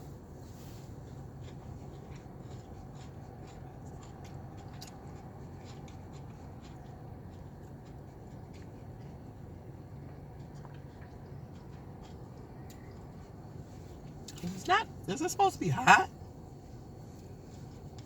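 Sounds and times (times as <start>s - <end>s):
person chewing food: 0.0s - 15.0s, 16.0s - 18.0s
steady low hum: 0.0s - 18.0s
fork clicks and scrapes: 1.0s - 8.9s.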